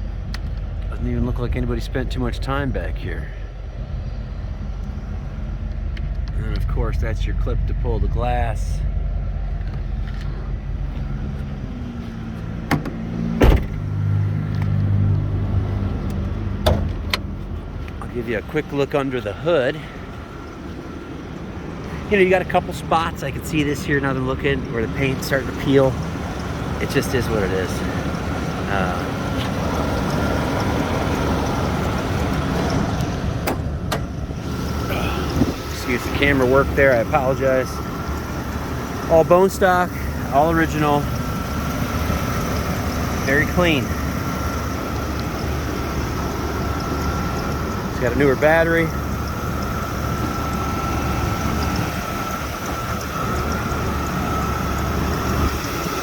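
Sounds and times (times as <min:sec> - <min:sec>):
engine idling: 0:00.0 - 0:56.0.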